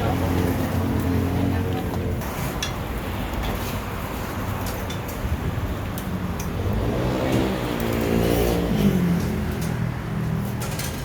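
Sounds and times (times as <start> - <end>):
steady background noise: 0.0 - 11.0
vehicle engine passing by: 6.6 - 10.6.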